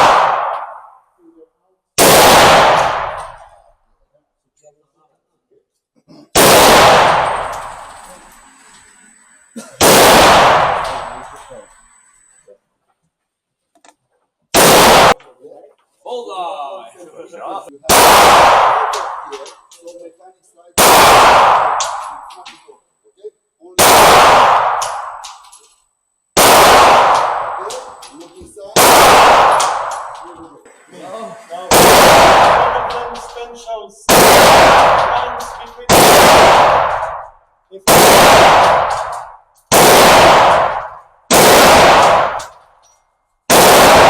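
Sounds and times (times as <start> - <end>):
pistol shots echoing: 0.0 - 1.0, 2.0 - 3.7, 6.4 - 8.0, 9.8 - 11.6, 14.6 - 15.2, 17.9 - 19.7, 20.8 - 22.5, 23.8 - 25.6, 26.4 - 30.4, 31.7 - 42.6, 43.5 - 44.0.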